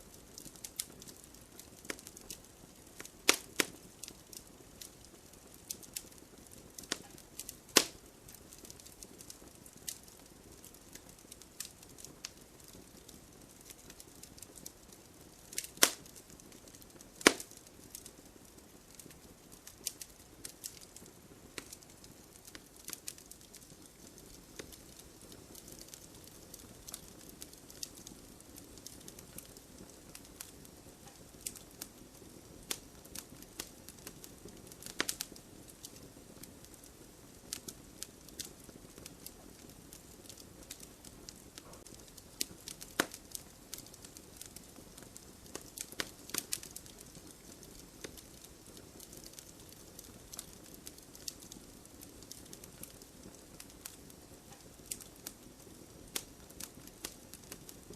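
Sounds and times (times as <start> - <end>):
firewood crackling: 0.0 - 57.9
fire hissing: 0.1 - 12.8, 13.6 - 16.6, 17.2 - 31.9, 37.4 - 55.4
sharp pops and snaps: 3.0 - 4.2, 6.8 - 8.0, 15.5 - 18.0, 19.0 - 28.1, 34.8 - 36.0, 41.6 - 51.6.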